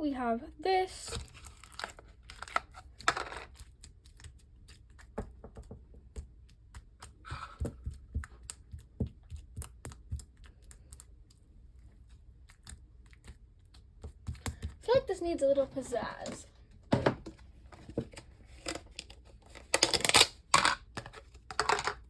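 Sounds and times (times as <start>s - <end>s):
slime squishing: 1.2s - 15.9s.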